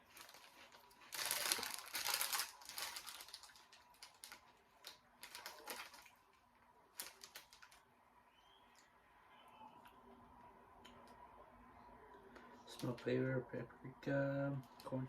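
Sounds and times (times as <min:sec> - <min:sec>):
chip bag crinkling: 0:00.0 - 0:06.2, 0:06.9 - 0:07.8.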